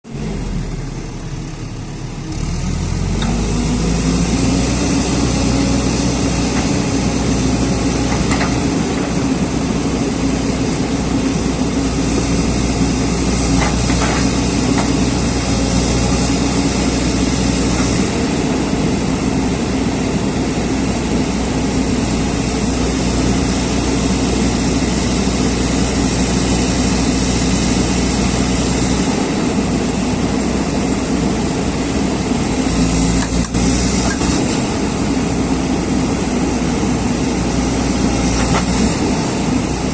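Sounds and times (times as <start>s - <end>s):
excavator diesel engine revving: 0.1s - 39.9s.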